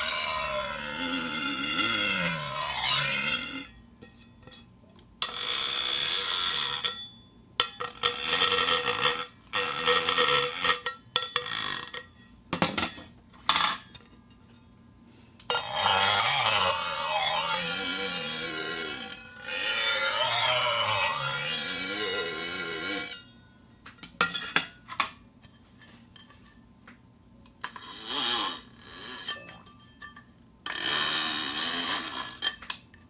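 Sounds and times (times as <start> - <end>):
iron plate ringing: 6.3 - 8.6, 29.2 - 30.3.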